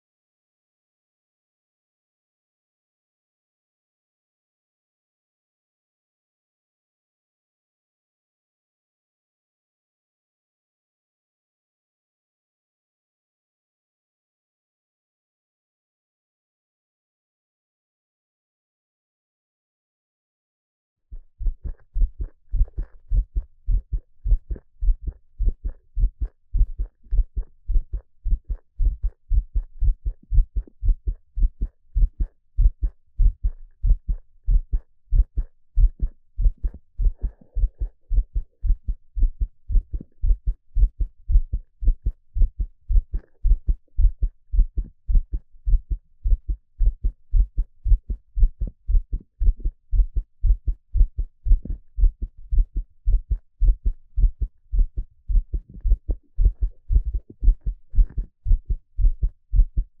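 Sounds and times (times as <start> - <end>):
heartbeat thumps: 21.1 - 59.9.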